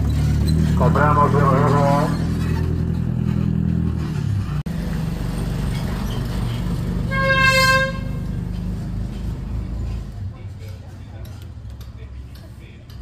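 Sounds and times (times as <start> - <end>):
vehicle engine running: 0.0 - 13.0
short horn toot: 7.1 - 8.3.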